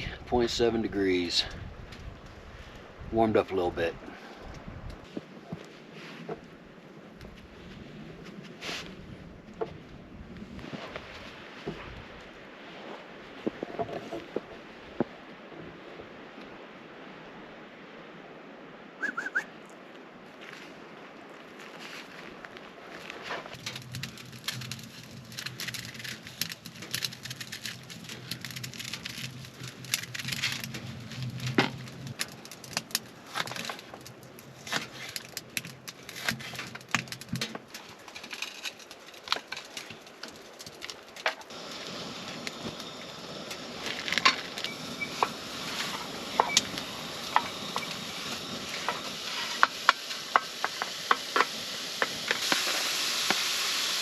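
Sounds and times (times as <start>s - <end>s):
food sizzling in a frying pan: 41.6s - 54.0s.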